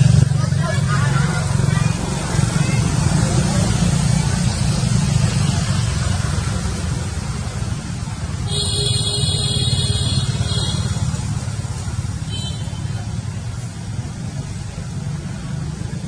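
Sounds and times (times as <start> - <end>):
background traffic rumble: 0.0 - 16.0.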